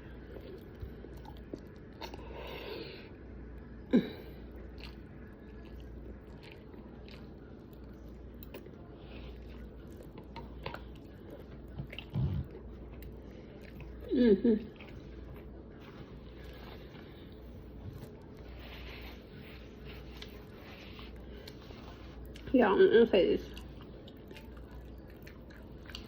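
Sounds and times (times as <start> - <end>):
person chewing: 0.0 - 2.8, 3.6 - 22.5, 23.5 - 26.0
soft mouth clicks and smacks: 4.7 - 8.8.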